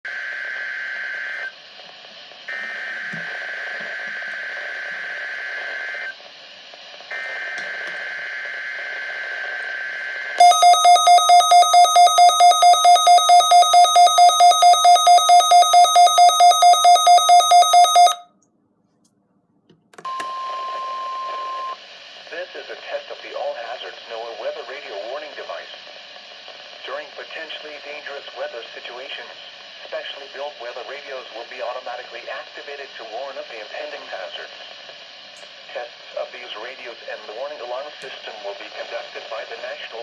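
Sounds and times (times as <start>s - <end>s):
pulsing buzzy alarm tone: 10.4s - 18.2s
screechy modem-like data bursts: 10.4s - 18.2s
steady alert tone: 10.4s - 18.2s
radio hiss: 21.4s - 40.0s.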